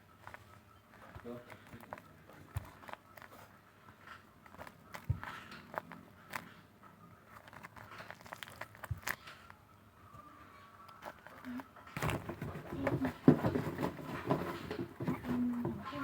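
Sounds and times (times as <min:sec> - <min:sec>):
paper crinkling and rustling: 0:00.1 - 0:06.6, 0:07.2 - 0:09.6, 0:11.0 - 0:16.0
soft thumps: 0:12.0 - 0:16.0.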